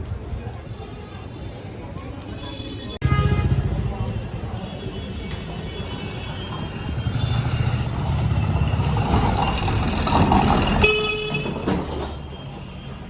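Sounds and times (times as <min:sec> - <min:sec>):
car horn honking: 0:02.8 - 0:03.8, 0:10.8 - 0:11.6
vehicle engines passing: 0:02.9 - 0:13.0.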